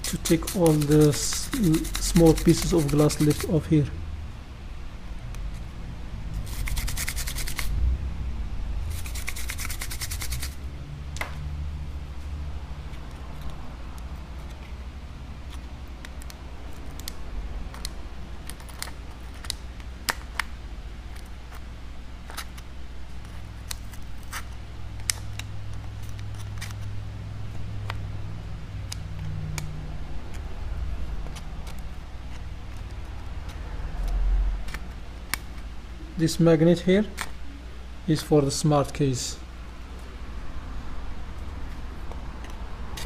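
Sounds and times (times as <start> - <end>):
toothbrush scrubbing: 0.0 - 3.7, 6.4 - 7.7, 8.9 - 10.6.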